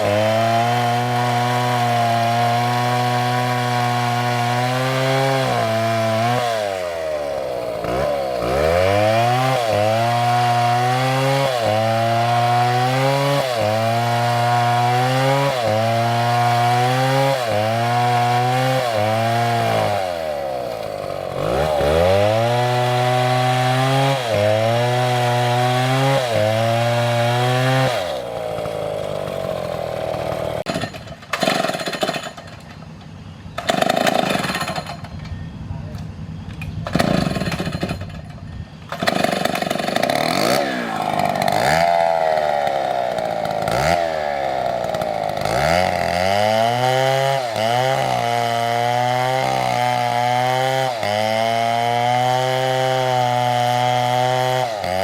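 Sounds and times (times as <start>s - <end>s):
chainsaw cutting wood: 0.0s - 32.9s, 33.5s - 35.2s, 36.8s - 55.0s.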